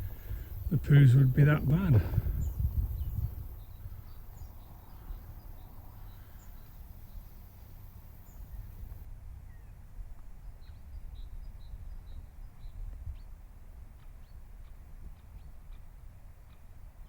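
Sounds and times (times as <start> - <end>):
small birds chirping: 0.0 - 9.8
wind rumble on microphone: 0.0 - 17.0.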